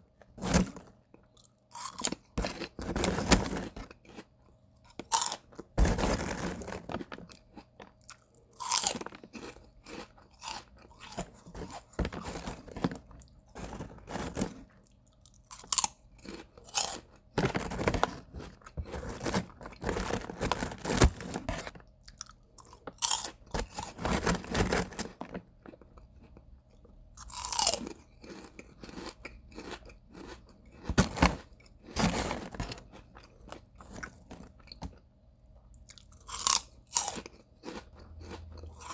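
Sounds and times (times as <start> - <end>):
potato chips crunching: 0.2 - 35.0, 35.8 - 38.9
person chewing: 3.6 - 5.8, 6.5 - 17.3, 21.5 - 24.0, 25.6 - 32.0, 32.6 - 35.0, 35.7 - 38.9.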